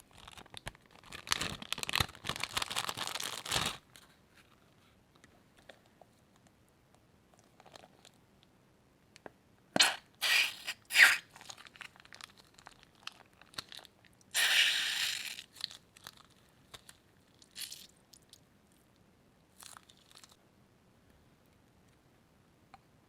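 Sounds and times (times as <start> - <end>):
crunchy slime crackling: 0.0 - 3.9, 9.8 - 18.4.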